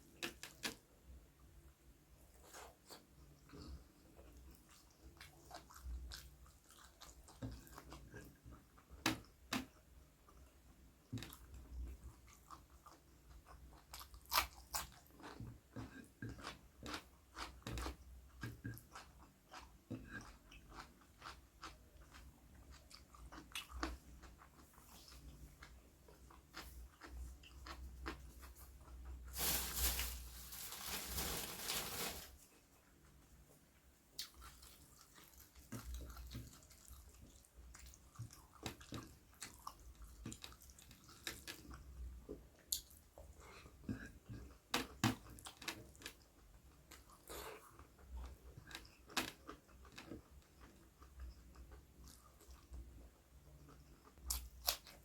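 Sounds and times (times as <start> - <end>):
person chewing crunchy food: 2.3 - 8.5, 12.2 - 29.3, 34.2 - 41.9.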